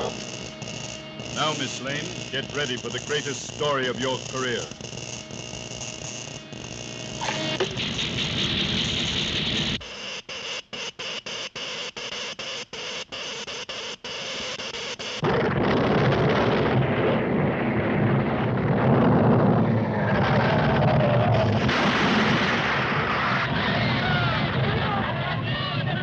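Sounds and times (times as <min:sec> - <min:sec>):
choppy electrical sputter: 0:00.0 - 0:25.7
deep earthquake rumble: 0:15.2 - 0:26.0.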